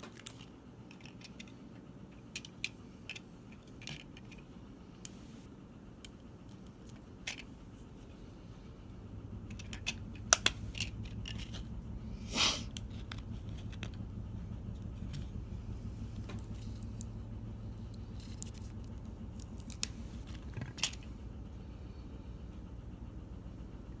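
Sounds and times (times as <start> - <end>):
small plastic parts clicking: 0.0 - 5.2, 6.0 - 7.5, 9.4 - 11.7, 12.7 - 14.0, 17.8 - 21.1
low steady hum: 0.0 - 24.0
short hiss: 12.2 - 12.7.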